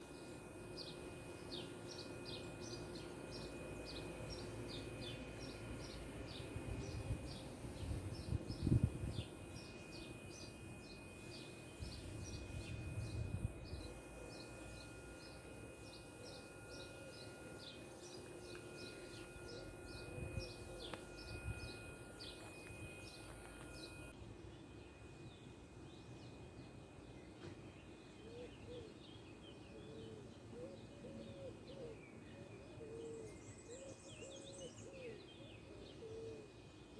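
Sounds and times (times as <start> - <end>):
outdoor background noise: 0.0 - 36.9
small birds chirping: 0.2 - 24.1.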